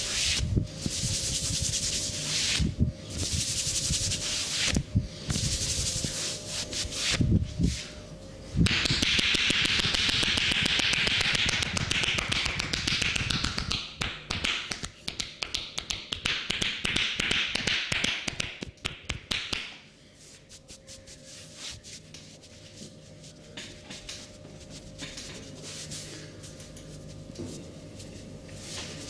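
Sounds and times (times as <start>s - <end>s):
hands tapping and slapping body: 8.7s - 19.8s.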